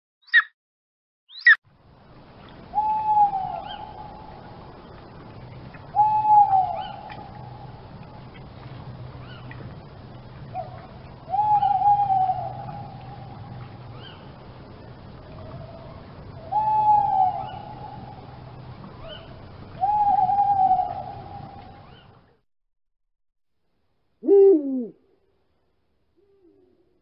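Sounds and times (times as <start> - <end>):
faint bird chirps: 1.3 - 1.6
bird hooting whistle: 2.7 - 4.1, 6.0 - 7.6, 11.3 - 13.3, 16.4 - 18.2, 19.0 - 22.1, 24.2 - 25.0.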